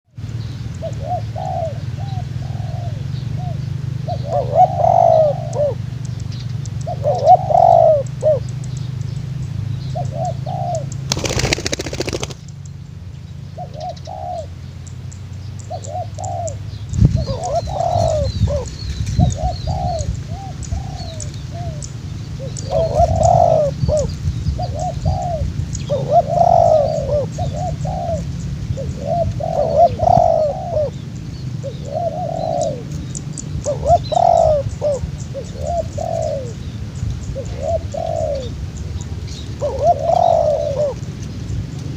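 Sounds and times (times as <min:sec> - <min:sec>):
small birds chirping: 0:00.1 - 0:41.9
dove cooing: 0:00.8 - 0:05.9, 0:06.8 - 0:08.5, 0:09.9 - 0:12.4, 0:13.6 - 0:14.6, 0:15.7 - 0:36.6, 0:37.4 - 0:38.7, 0:39.6 - 0:41.1.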